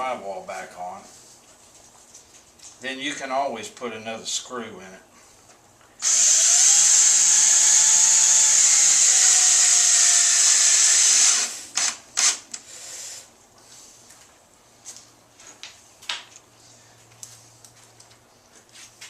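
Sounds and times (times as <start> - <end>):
power drill driving a screw: 6.0 - 12.8.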